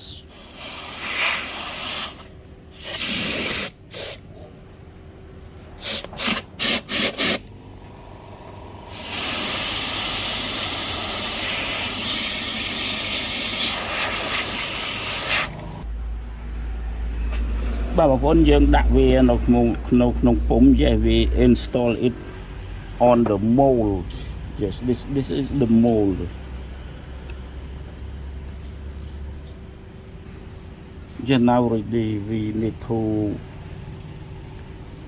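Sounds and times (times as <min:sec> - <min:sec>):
air blower hissing: 0:00.0 - 0:04.3, 0:05.8 - 0:15.8.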